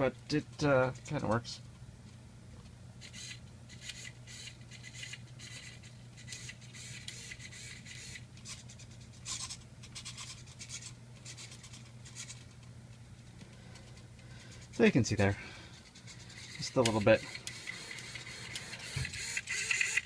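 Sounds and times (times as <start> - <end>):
steady low hum: 0.0 - 20.0
servos buzzing and grinding: 3.0 - 12.5, 16.1 - 20.0.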